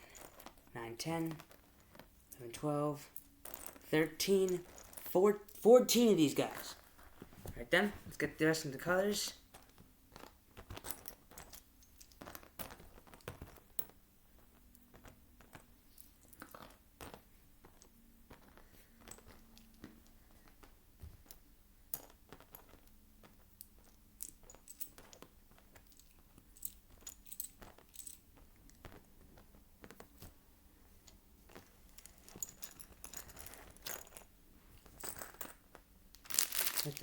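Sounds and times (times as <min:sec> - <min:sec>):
plastic toy bricks clattering: 0:36.2 - 0:37.0.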